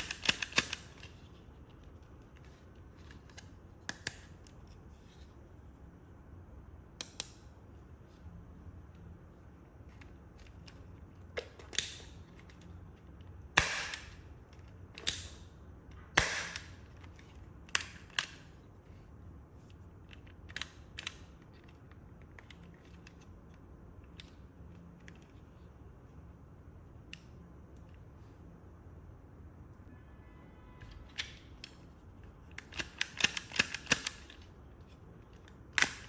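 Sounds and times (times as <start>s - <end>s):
revolver parts clicking: 0.0s - 5.2s, 9.9s - 19.0s, 19.6s - 25.6s, 30.8s - 36.0s.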